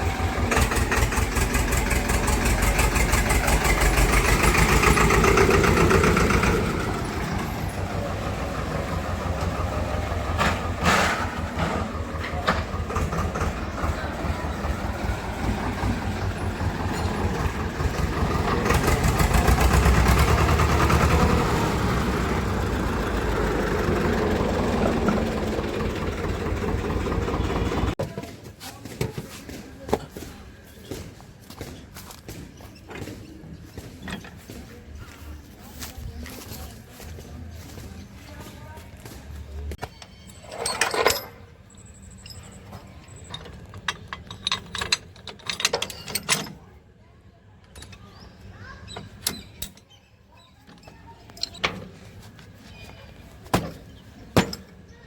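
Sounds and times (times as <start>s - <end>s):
tractor diesel engine chugging: 0.0s - 28.0s.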